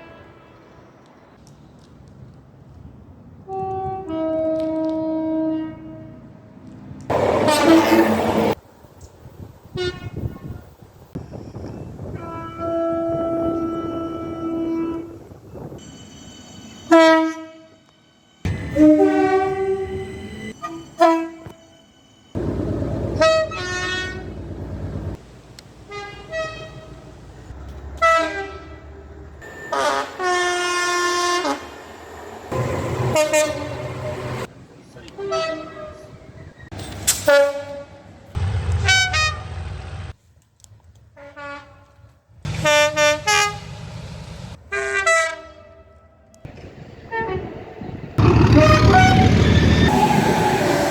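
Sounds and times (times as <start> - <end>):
train engines and wheels rumbling: 0.0 - 50.9
train horns tooting: 3.5 - 6.2, 7.1 - 8.6, 9.7 - 10.5, 12.0 - 17.9, 18.5 - 25.2, 25.9 - 27.1, 28.0 - 34.5, 35.1 - 36.2, 41.2 - 43.8, 44.7 - 46.2, 47.1 - 47.6, 48.2 - 50.9.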